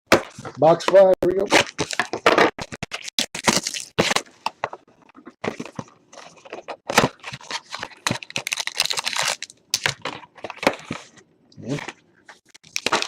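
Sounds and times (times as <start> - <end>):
plastic packaging crinkling and tearing: 1.5 - 4.3, 6.2 - 11.1, 12.5 - 13.0.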